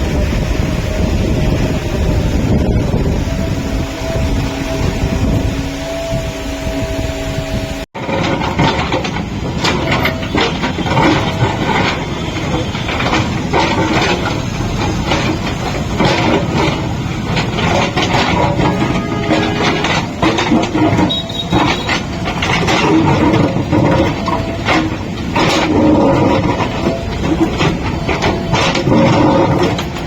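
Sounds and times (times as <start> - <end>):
diesel engine running: 0.0 - 30.0
wind on microphone: 0.0 - 30.0.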